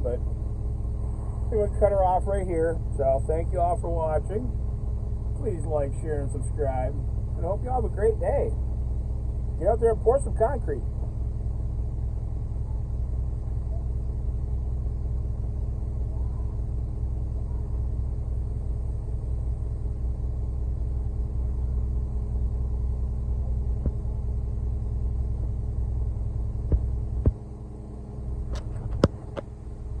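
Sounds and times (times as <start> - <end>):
diesel engine rumbling: 0.0 - 30.0.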